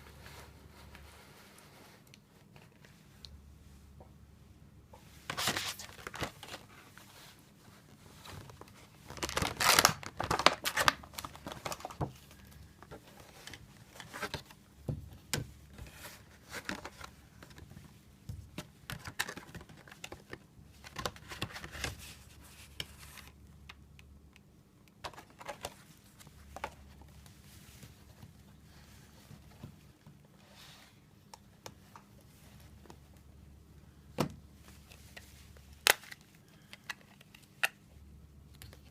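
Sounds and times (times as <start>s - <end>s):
plastic packaging crinkling: 8.4s - 12.5s.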